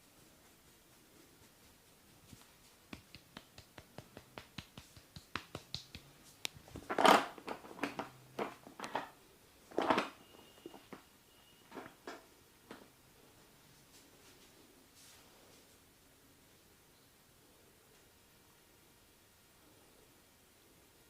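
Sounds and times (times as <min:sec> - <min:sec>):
light quick massage taps: 0:02.2 - 0:06.6
louder massage slaps: 0:02.4 - 0:06.6.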